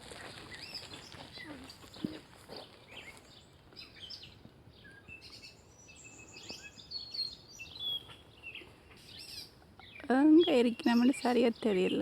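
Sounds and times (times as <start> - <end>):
birds singing and chirping: 0.0 - 12.0
faint outdoor background noise: 0.0 - 12.0.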